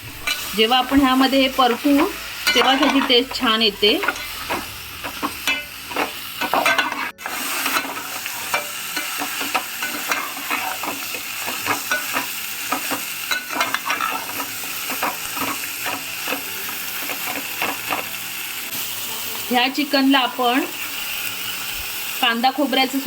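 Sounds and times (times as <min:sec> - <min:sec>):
chicken sizzling in oil: 0:00.0 - 0:23.0
spoon scraping pot: 0:00.1 - 0:18.0.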